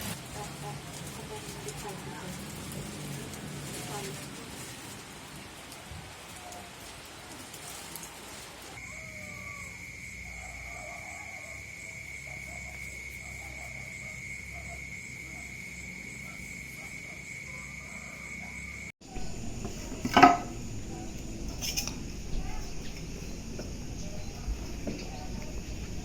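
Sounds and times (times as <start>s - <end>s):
rain hiss: 0.0s - 10.6s.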